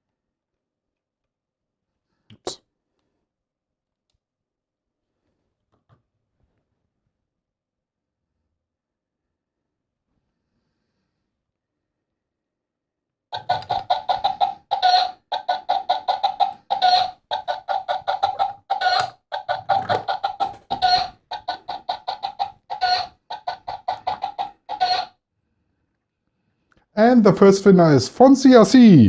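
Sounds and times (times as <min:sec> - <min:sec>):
kitchen timer hen clucking alarm: 0:13.4 - 0:25.1.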